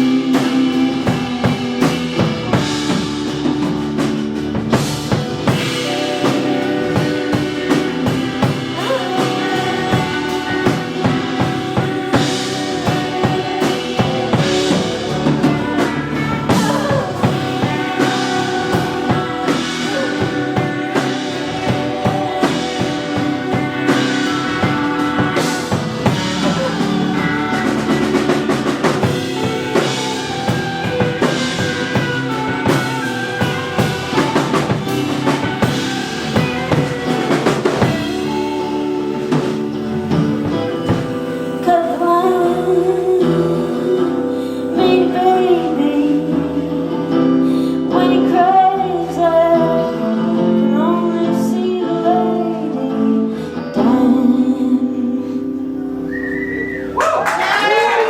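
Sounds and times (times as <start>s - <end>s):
cymbals: 0.0s - 45.9s
drum kit: 0.0s - 49.2s, 55.6s - 58.0s
electric guitars: 0.0s - 58.0s
person singing: 0.0s - 58.0s.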